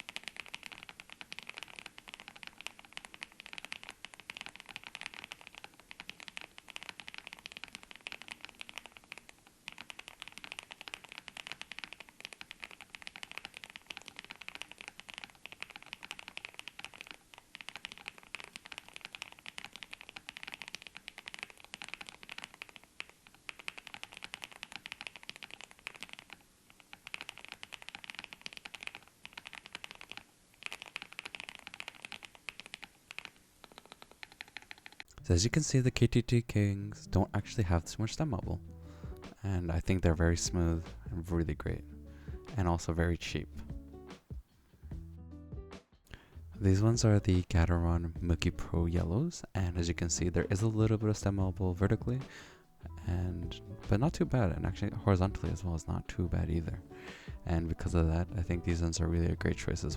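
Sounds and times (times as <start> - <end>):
mechanical keyboard typing: 0.0 - 35.1.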